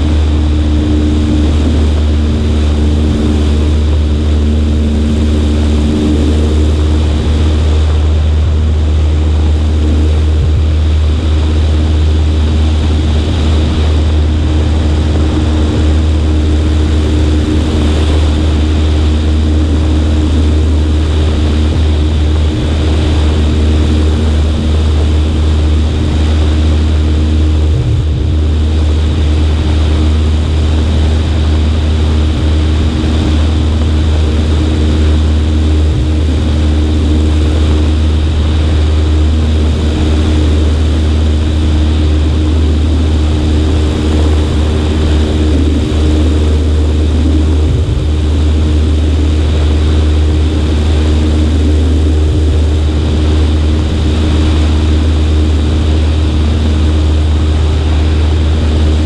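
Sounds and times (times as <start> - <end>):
air rushing over microphone: 0.0 - 59.0
airplane engine and propeller drone: 0.0 - 59.0.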